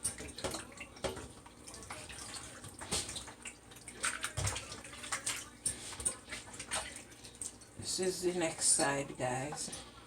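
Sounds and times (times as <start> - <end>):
water splashing in a bowl: 0.0 - 7.9.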